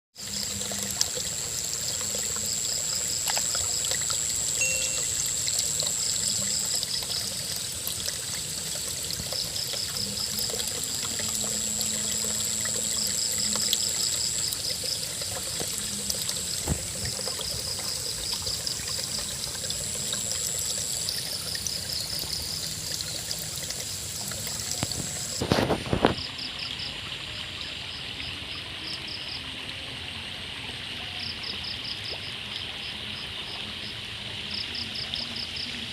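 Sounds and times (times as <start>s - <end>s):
insects high whine: 0.2s - 29.4s
river water flowing: 0.2s - 35.9s
insects pulsing chirps: 1.8s - 7.7s, 8.8s - 23.2s.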